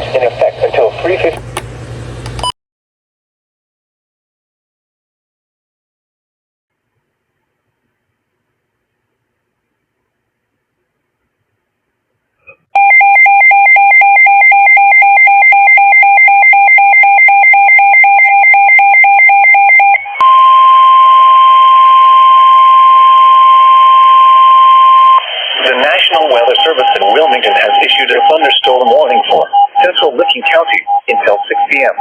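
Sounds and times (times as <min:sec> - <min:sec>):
radio hiss: 0:00.0 - 0:01.4, 0:25.2 - 0:32.0
alarm beeping rapidly: 0:12.8 - 0:32.0
steady warning tone: 0:12.8 - 0:32.0.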